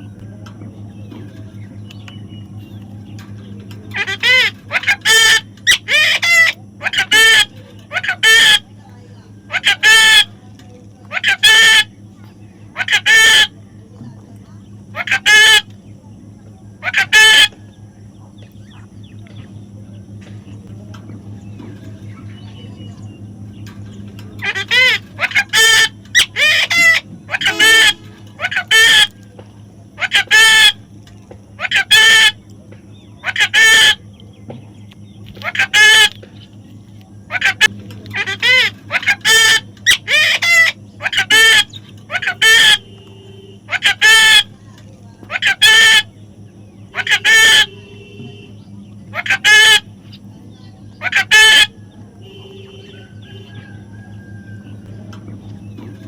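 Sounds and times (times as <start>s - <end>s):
faint chirps and clicks: 0.0s - 5.9s, 10.4s - 11.1s, 13.9s - 14.8s, 17.5s - 24.5s, 30.9s - 31.5s, 34.1s - 38.2s
steady low hum: 0.0s - 56.0s
parrot calls: 3.9s - 10.5s, 11.1s - 12.1s, 12.7s - 13.6s, 14.8s - 15.7s, 16.7s - 17.9s, 24.4s - 32.4s, 33.1s - 34.1s, 35.2s - 46.2s, 46.8s - 50.2s, 50.9s - 54.9s.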